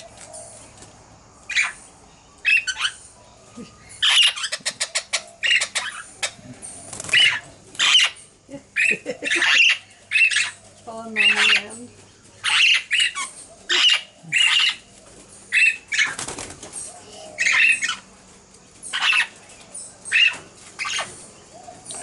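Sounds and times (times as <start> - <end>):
parrots harsh calls: 4.0 - 6.4, 7.1 - 10.6, 11.2 - 11.8, 12.4 - 14.9, 15.5 - 16.2, 17.4 - 18.1, 18.9 - 19.4, 20.0 - 21.2
wing flapping rustle: 6.8 - 8.0, 14.8 - 17.1.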